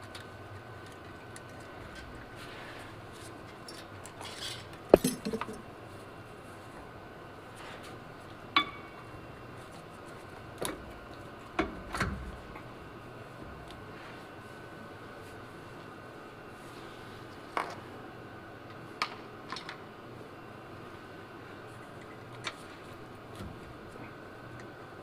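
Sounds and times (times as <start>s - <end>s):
metal tools clinking and knocking: 3.7s - 5.6s.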